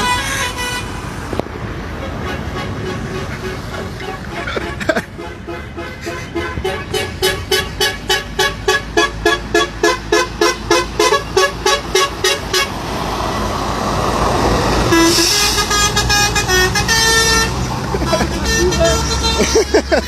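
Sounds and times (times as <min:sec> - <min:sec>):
horn steady stepping tones: 0:01.9 - 0:12.8, 0:14.8 - 0:20.0
truck horn short blasts: 0:02.1 - 0:12.7, 0:14.9 - 0:20.0.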